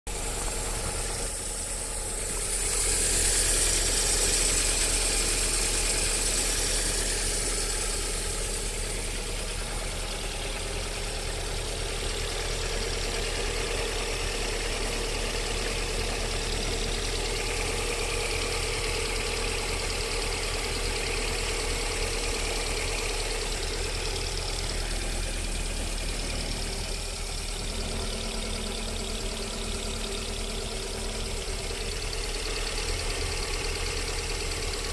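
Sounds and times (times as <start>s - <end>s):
car engine idling with a knock: 0.1s - 34.9s.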